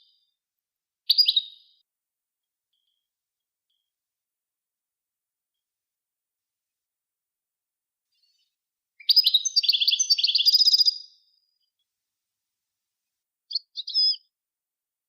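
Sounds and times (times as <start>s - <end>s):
songbird twittering: 1.1s - 1.8s, 9.0s - 11.4s, 13.5s - 14.3s.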